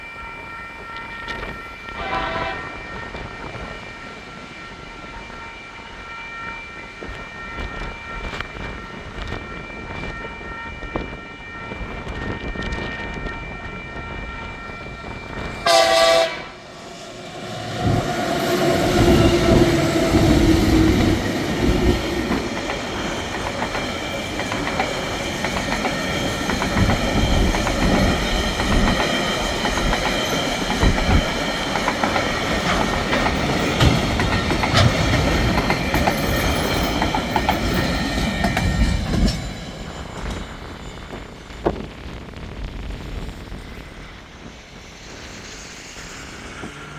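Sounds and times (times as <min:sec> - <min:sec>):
diesel locomotive horn blast: 0:01.9 - 0:04.1, 0:15.5 - 0:22.4
locomotives working hard: 0:14.8 - 0:41.8
wheels clicking over rail joints: 0:17.4 - 0:39.5.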